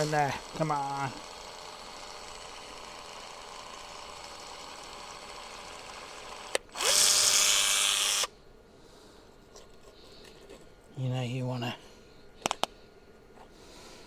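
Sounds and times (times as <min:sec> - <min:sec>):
power tool motor whirring: 0:00.0 - 0:08.3
mechanical hum: 0:00.0 - 0:14.0.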